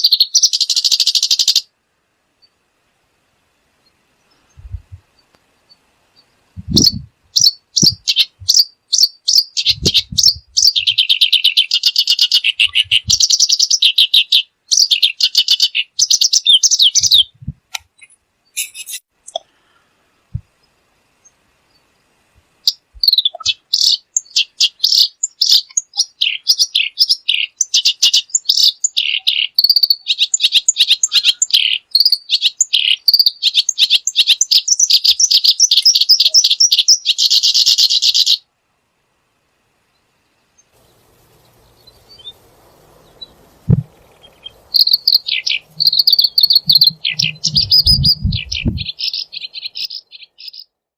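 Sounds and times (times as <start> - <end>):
songbird chirping and trilling: 0.0 - 1.7, 3.5 - 19.4, 20.4 - 38.5, 39.8 - 50.8
low bumps: 4.5 - 5.0, 6.6 - 7.1, 9.7 - 10.9, 40.8 - 49.0.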